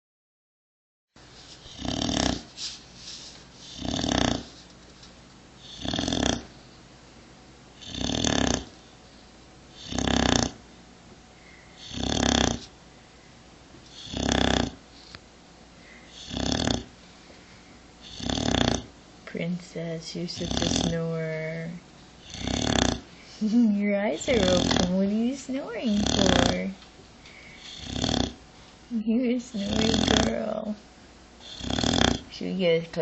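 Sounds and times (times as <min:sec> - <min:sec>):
dog snoring: 0:01.6 - 0:02.6, 0:03.6 - 0:04.6, 0:05.6 - 0:06.6, 0:07.8 - 0:08.8, 0:09.7 - 0:10.6, 0:11.8 - 0:12.7, 0:13.9 - 0:14.8, 0:16.0 - 0:16.9, 0:18.0 - 0:19.0, 0:20.2 - 0:28.4, 0:29.5 - 0:30.8, 0:31.4 - 0:32.4.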